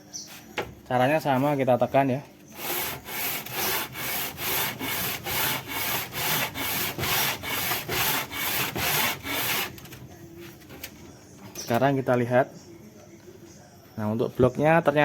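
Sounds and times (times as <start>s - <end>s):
metal block scraping on sandpaper: 2.5s - 9.9s.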